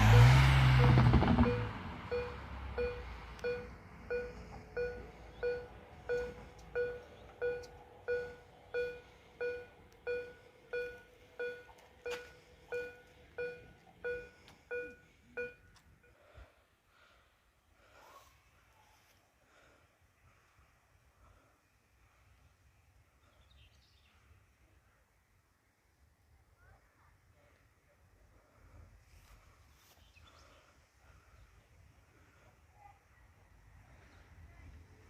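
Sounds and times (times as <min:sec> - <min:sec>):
level crossing warning bell: 0:00.1 - 0:16.2.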